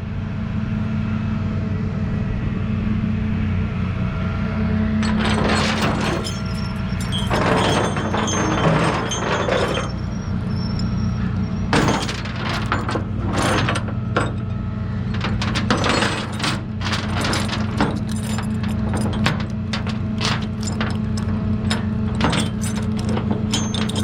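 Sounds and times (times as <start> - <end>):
metallic clicks and clatter: 5.0 - 24.0.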